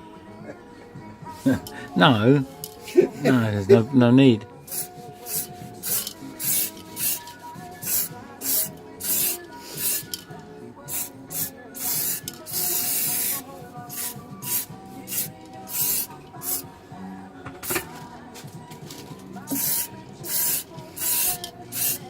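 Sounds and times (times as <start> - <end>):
spray paint hissing on metal: 4.7 - 10.3, 10.9 - 16.7, 19.5 - 22.0.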